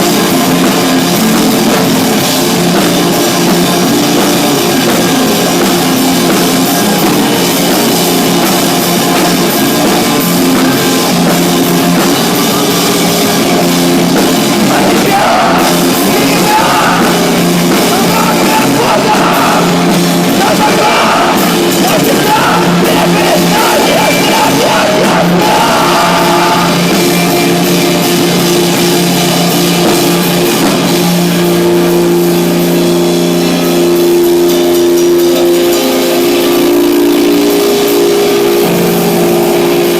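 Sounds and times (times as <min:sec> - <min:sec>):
drums: 0:00.0 - 0:39.9
low guitar notes: 0:00.0 - 0:39.9
person singing or shouting: 0:14.6 - 0:27.0.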